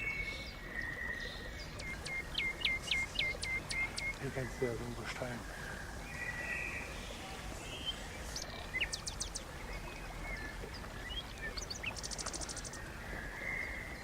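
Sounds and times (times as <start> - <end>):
small birds chirping: 0.0 - 14.0
bird trill: 1.8 - 4.5.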